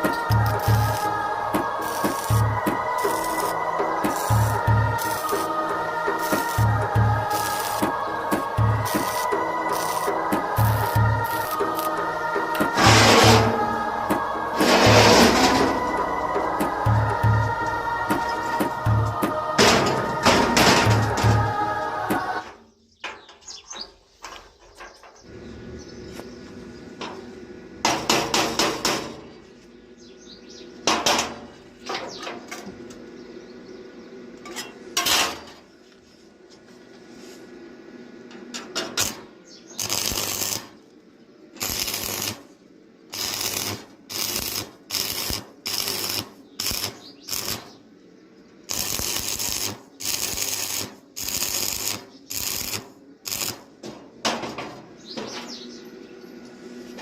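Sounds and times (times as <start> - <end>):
electric arc welding bursts: 0.0 - 22.3, 39.0 - 40.8, 41.6 - 42.5, 43.1 - 47.8, 48.6 - 53.7.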